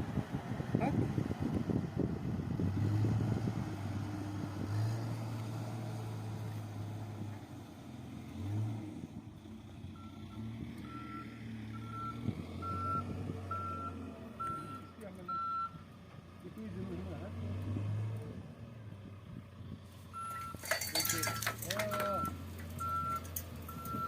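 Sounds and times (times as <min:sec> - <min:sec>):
construction machine engine droning: 0:00.0 - 0:24.0
reversing alarm beeps: 0:10.0 - 0:15.8, 0:20.2 - 0:20.6, 0:21.2 - 0:24.0.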